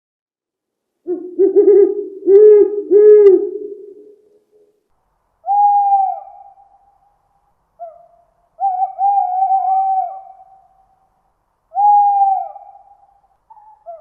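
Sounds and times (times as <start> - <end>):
owl hooting: 1.0 - 4.3, 5.4 - 7.2, 7.8 - 11.0, 11.7 - 14.0.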